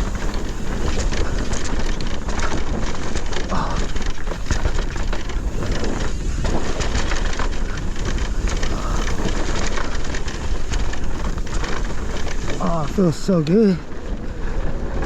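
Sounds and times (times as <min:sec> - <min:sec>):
bike rattling over bumps: 0:00.0 - 0:15.0
tyres rolling over dry dirt: 0:00.0 - 0:15.0
wind over microphone: 0:00.0 - 0:15.0.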